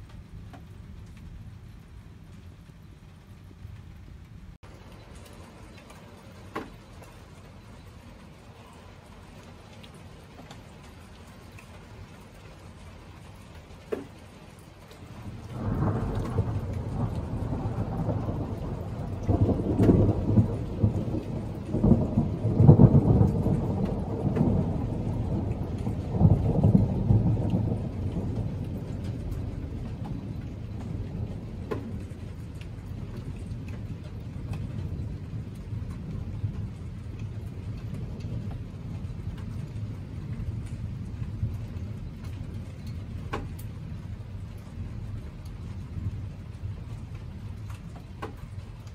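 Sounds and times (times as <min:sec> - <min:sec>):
steady rain: 0:00.0 - 0:48.9
rolling thunder: 0:15.1 - 0:47.7.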